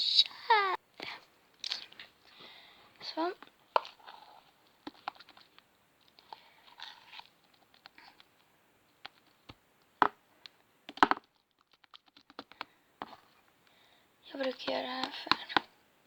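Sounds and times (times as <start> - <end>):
slime crackling and clicking: 4.7 - 13.2, 14.4 - 15.7.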